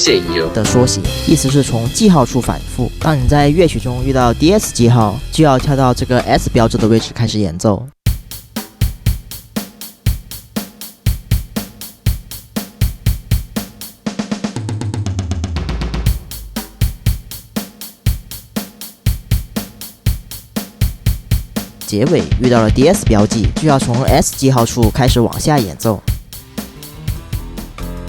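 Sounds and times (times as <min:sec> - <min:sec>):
drum kit rock groove: 0:00.0 - 0:07.0, 0:08.0 - 0:28.0
tom drum fill: 0:08.0 - 0:28.0.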